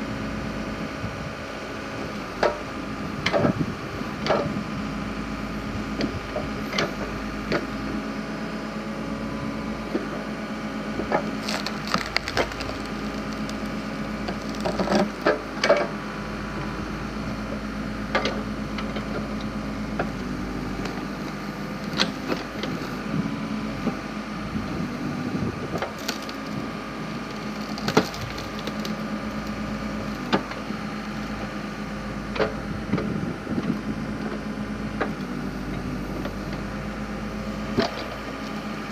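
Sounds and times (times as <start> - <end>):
engine running steadily: 0.0 - 38.9
wood cracking and splintering: 11.0 - 15.8, 21.8 - 22.8, 25.6 - 31.5.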